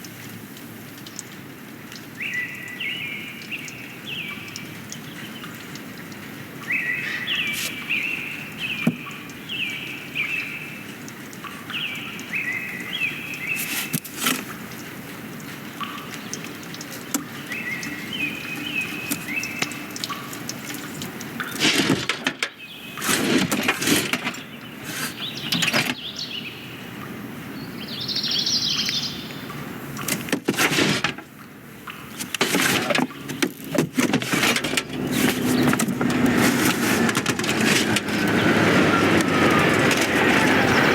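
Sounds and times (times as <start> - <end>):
outdoor background: 0.0 - 40.9
birds chirping: 2.1 - 40.9
loud knocks thuds and clatter: 21.6 - 24.4.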